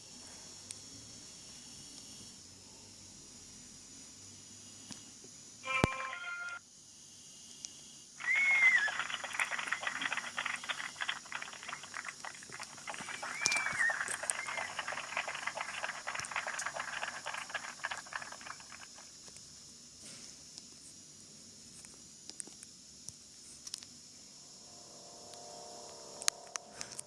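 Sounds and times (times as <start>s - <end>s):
animal-like phone ringtone: 5.6s - 6.6s
short beep: 5.6s - 6.6s.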